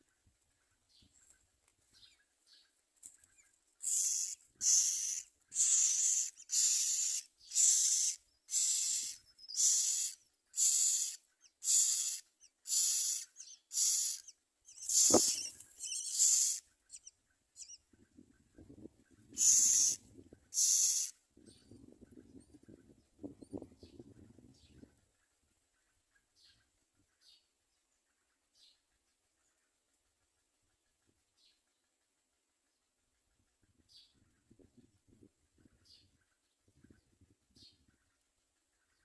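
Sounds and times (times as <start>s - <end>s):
nestlings rasping begging calls: 3.8s - 17.8s, 19.4s - 20.0s, 20.6s - 21.1s.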